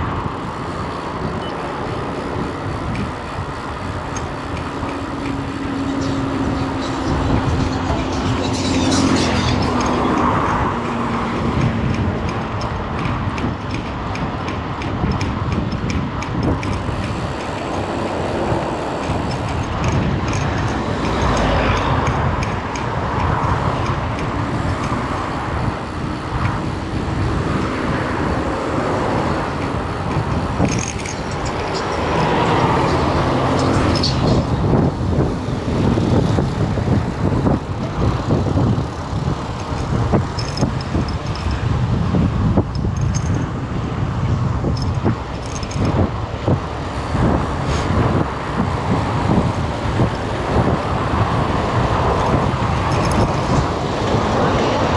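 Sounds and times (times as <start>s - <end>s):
vehicle and road rumble: 0.0s - 54.9s
rattling: 29.4s - 34.5s.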